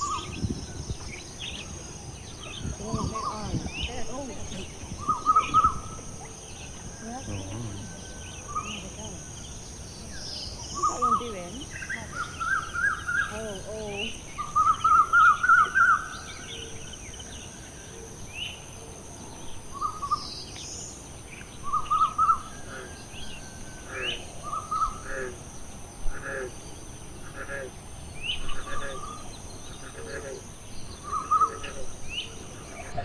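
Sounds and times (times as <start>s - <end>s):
other birds chirping sparsely: 0.0s - 25.0s.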